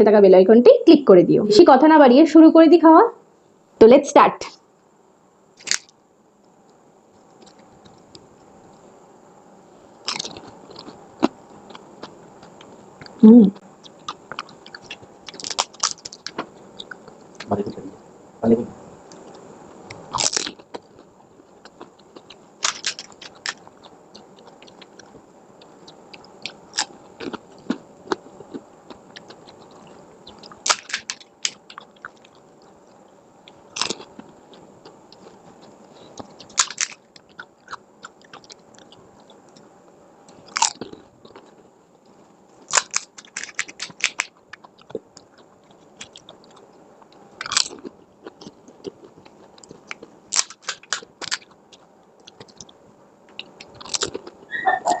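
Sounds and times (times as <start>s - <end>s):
quiet chewing: 5.6s - 8.9s, 9.9s - 17.9s, 19.0s - 55.0s
crisp shells crunching: 22.6s - 23.6s, 30.5s - 31.8s, 36.5s - 37.1s, 42.7s - 44.3s.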